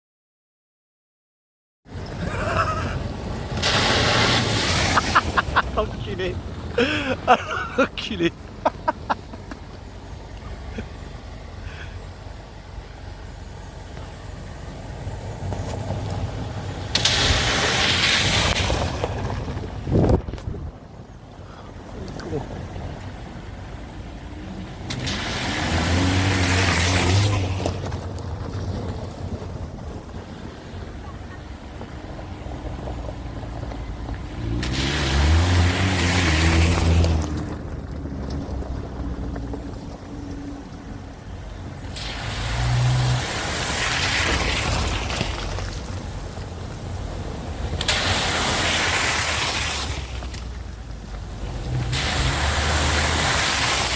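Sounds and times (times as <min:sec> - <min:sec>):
car engine rumbling: 0:01.8 - 0:53.9
car engine revving: 0:02.0 - 0:11.9, 0:24.1 - 0:28.6, 0:32.4 - 0:41.0
big water splash: 0:03.5 - 0:06.2, 0:16.8 - 0:20.2, 0:24.8 - 0:27.8, 0:34.4 - 0:37.3, 0:41.8 - 0:46.1, 0:47.5 - 0:50.7, 0:51.3 - 0:53.9.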